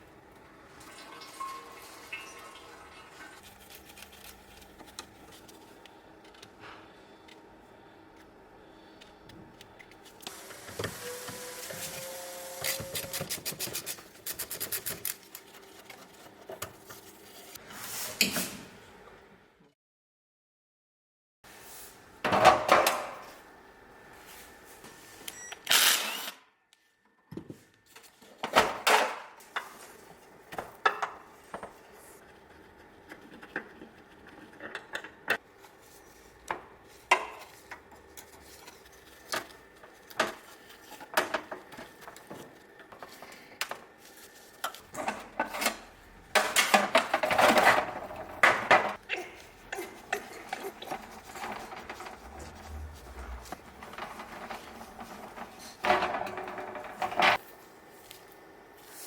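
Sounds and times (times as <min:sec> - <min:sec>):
tools and parts clattering: 0:44.9 - 0:49.0, 0:49.7 - 0:57.4.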